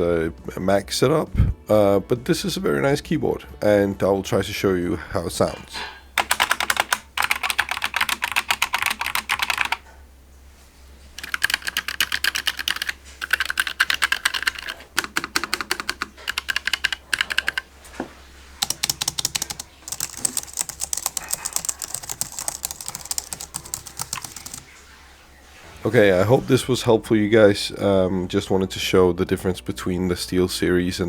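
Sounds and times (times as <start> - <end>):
fast typing on keyboards: 6.2 - 9.8, 11.2 - 24.7.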